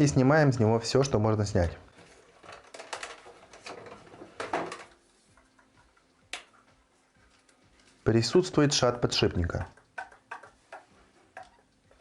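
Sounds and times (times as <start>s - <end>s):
rustling scraping and knocking: 1.9s - 5.9s.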